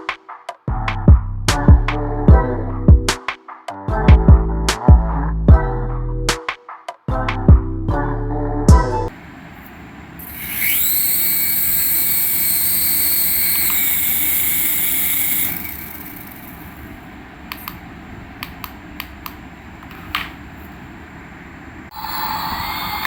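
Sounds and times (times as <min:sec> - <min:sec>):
toy aircraft whining: 0:10.2 - 0:16.7.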